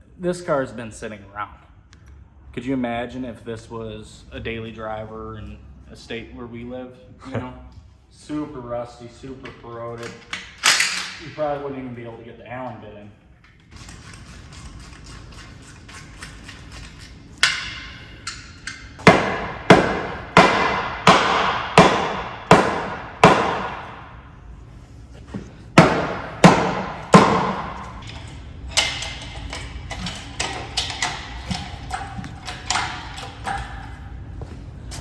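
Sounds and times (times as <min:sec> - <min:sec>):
hammer striking metal: 0:17.4 - 0:24.2, 0:25.8 - 0:28.0.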